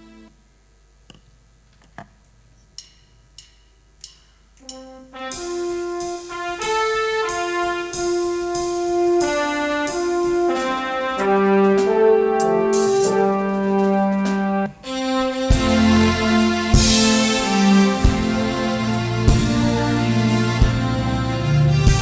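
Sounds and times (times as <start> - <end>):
brass held chords: 4.6 - 22.0.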